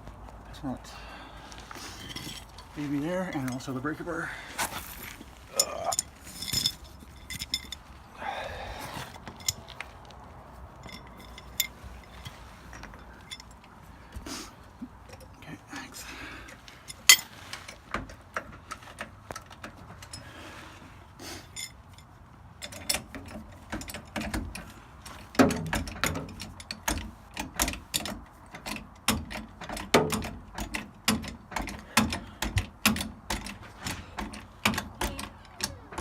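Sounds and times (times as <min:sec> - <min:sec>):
ratchet-like clicking and clanking: 0:22.6 - 0:36.0
heavy knocks on metal: 0:25.4 - 0:27.8, 0:29.1 - 0:35.4.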